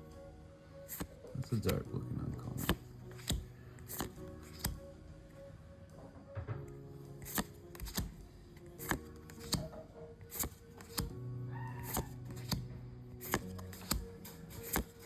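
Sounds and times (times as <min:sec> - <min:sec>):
background music: 0:00.0 - 0:15.0
cards flipping with snaps: 0:00.9 - 0:01.8, 0:02.5 - 0:04.8, 0:07.2 - 0:09.7, 0:10.3 - 0:11.2, 0:11.8 - 0:15.0.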